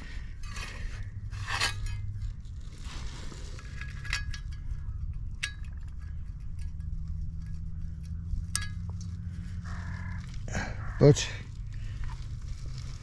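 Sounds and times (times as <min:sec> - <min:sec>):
metal scraping: 0:00.0 - 0:13.0
steady low hum: 0:00.0 - 0:13.0
small metal parts clinking: 0:03.4 - 0:10.0.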